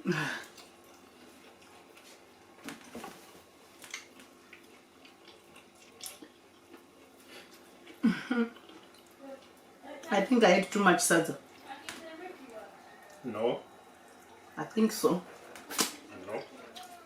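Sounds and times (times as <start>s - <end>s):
chewing smacks: 3.8s - 9.7s, 12.9s - 13.2s, 15.3s - 17.0s.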